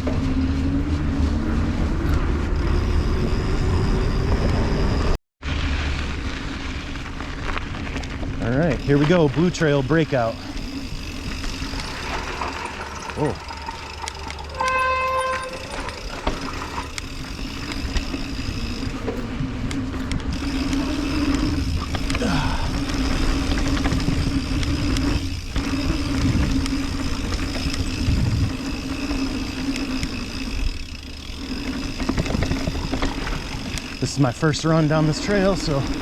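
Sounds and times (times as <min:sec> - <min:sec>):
bike tyres and frame rattling: 0:00.0 - 0:36.0
wind rumble on microphone: 0:17.5 - 0:29.0.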